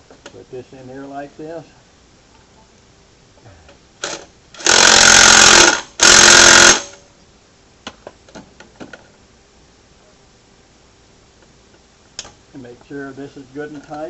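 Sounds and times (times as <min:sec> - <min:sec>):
impact wrench hammering bolt: 0:04.0 - 0:07.0.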